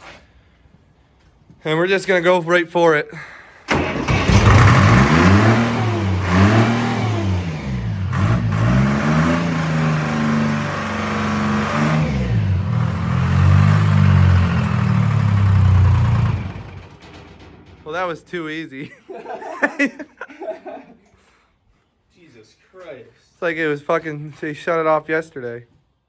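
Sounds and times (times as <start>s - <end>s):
diesel engine revving: 3.7s - 17.9s.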